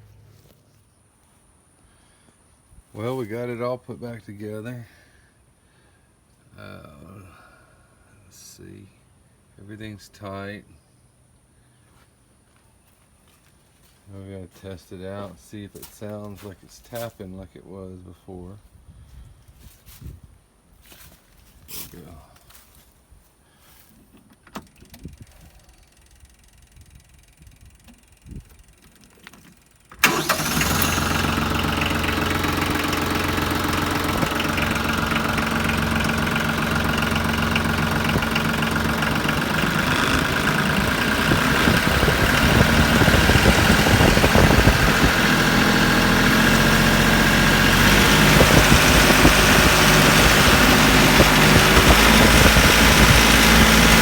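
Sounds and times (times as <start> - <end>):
tractor diesel engine running: 29.9 - 54.0.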